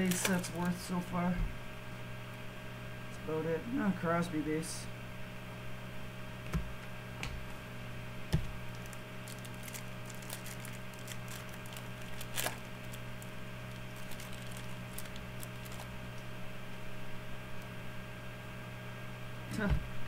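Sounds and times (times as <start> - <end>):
trading cards clicking and rustling: 0.0 - 0.8.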